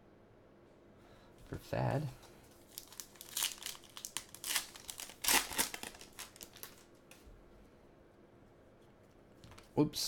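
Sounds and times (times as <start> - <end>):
wrapper crinkling and tearing: 2.6 - 7.0.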